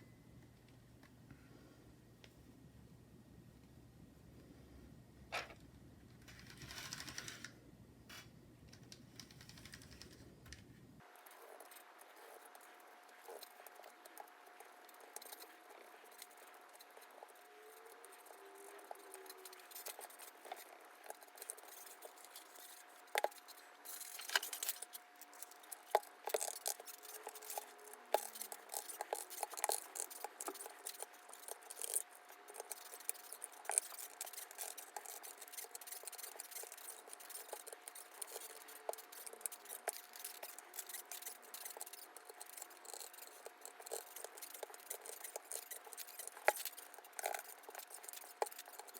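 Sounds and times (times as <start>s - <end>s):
faint steady hum: 0.0s - 48.9s.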